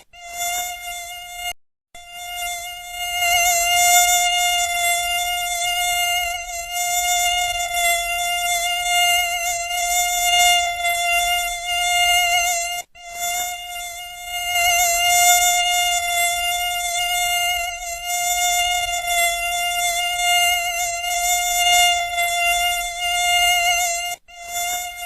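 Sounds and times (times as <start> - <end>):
mosquito wingbeat whine: 0.0 - 25.0.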